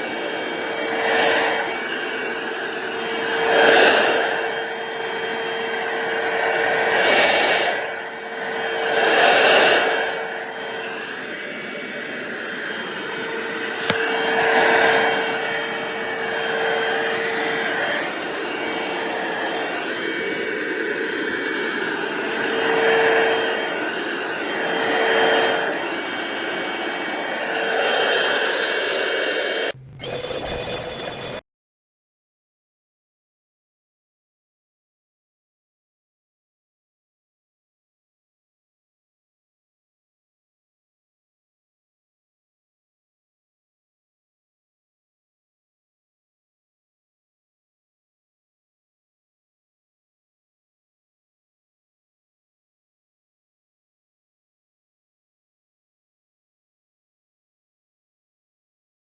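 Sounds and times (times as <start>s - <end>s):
stick vacuum cleaner running: 0.0s - 31.4s.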